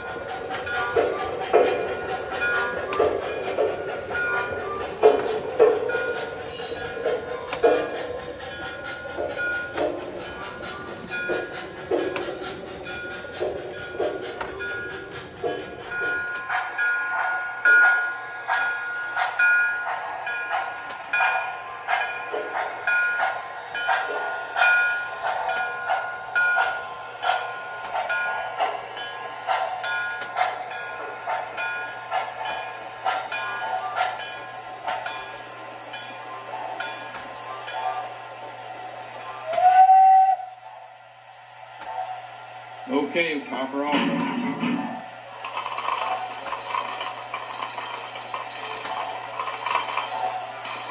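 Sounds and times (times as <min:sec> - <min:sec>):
model train steam chuffs: 0:00.0 - 0:20.8.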